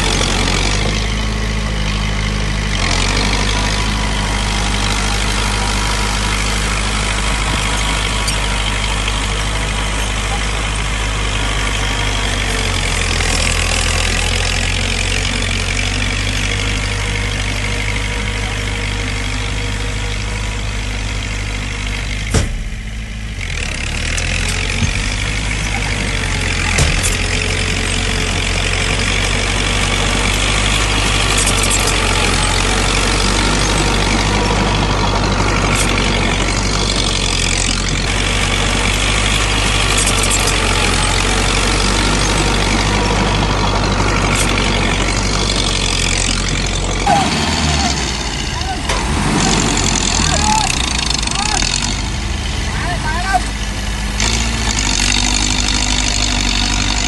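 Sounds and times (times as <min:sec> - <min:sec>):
heavy diesel engines running: 0:00.0 - 0:57.0
sharp knocks: 0:22.2 - 0:23.3, 0:26.7 - 0:27.7.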